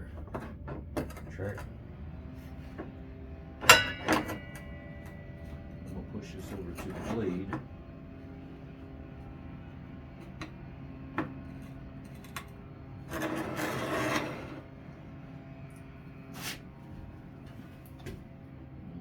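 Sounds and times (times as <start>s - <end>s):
object scraping across table: 13.0s - 14.8s.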